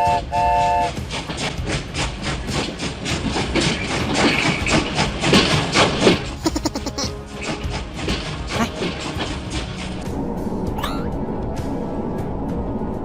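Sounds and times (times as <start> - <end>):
train horn blast: 0.0 - 1.0
train wheels clickety-clack: 0.0 - 6.4, 7.2 - 10.2.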